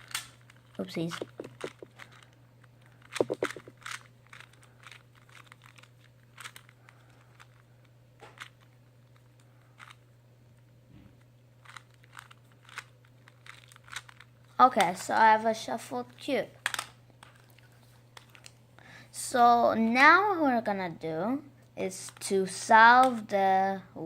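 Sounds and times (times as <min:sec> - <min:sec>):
faint low hum: 0:00.0 - 0:21.9
puzzle cube clicking: 0:01.0 - 0:02.2, 0:03.0 - 0:06.6.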